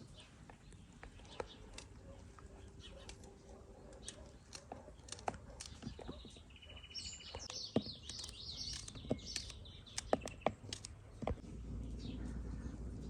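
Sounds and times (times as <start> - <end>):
small bird twittering: 0.0 - 13.0
sharp clicks and snaps: 0.7 - 2.0, 2.9 - 6.1, 7.4 - 11.4
low steady hum: 10.8 - 13.0.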